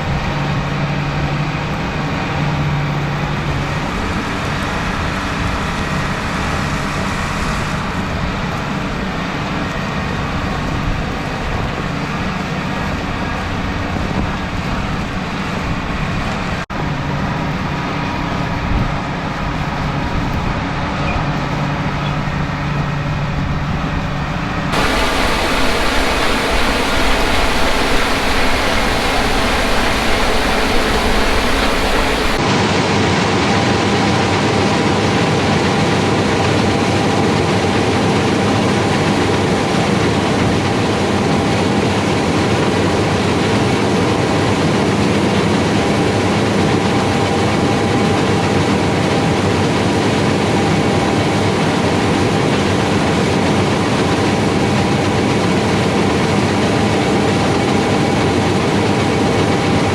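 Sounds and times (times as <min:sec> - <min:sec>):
harvest machinery drone: 0:24.7 - 0:32.4
wind-like rumble: 0:24.7 - 0:32.4.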